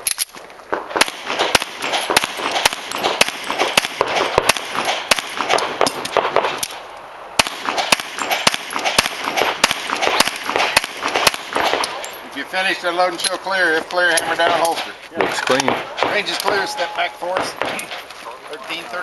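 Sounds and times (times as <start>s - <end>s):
pistol shots: 0.7s - 6.8s, 7.4s - 12.2s, 14.1s - 18.1s.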